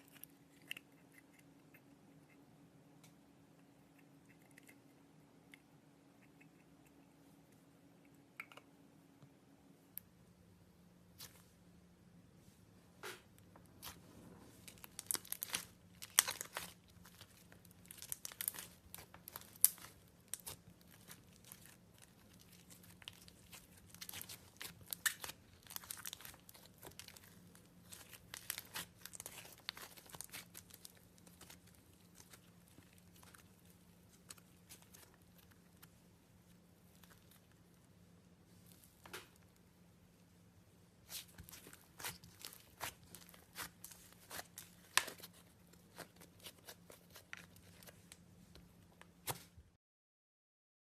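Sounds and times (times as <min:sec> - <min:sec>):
slime crackling and tearing: 0:14.6 - 0:36.0, 0:41.0 - 0:48.2.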